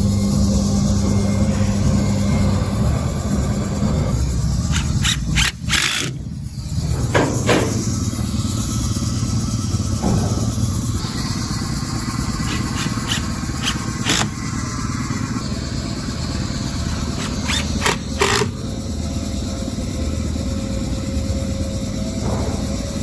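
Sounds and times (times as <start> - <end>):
low engine-like drone: 0.0 - 23.0
sharp clicks and knocks: 4.7 - 6.2, 6.8 - 8.0, 12.4 - 14.4, 17.2 - 18.6.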